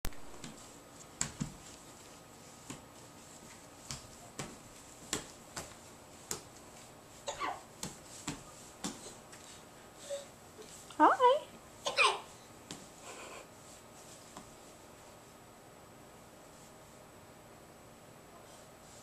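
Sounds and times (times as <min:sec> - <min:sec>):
hands patting hard floor: 0:00.2 - 0:09.6.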